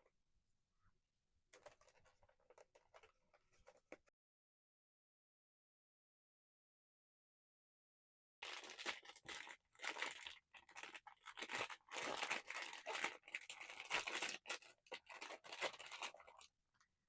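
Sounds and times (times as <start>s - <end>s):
paper and plastic tearing: 8.4s - 16.4s.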